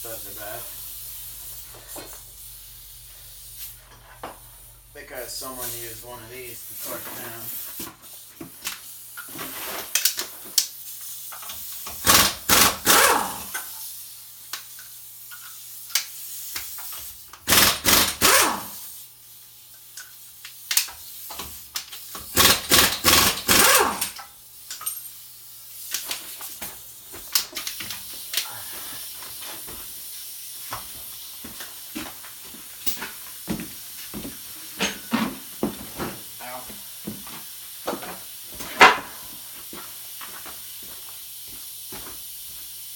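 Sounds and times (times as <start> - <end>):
impact wrench bursts: 11.3 - 13.9, 16.5 - 19.0, 20.8 - 24.9.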